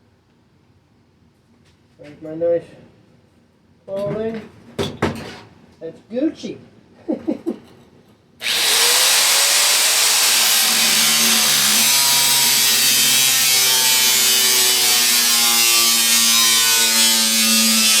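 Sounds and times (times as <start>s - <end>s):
power tool cutting sheet metal: 8.4s - 18.0s.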